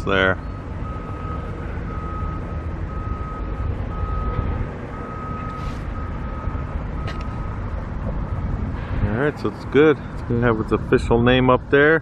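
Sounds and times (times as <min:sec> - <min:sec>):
reversing alarm beeping: 0:00.4 - 0:07.8.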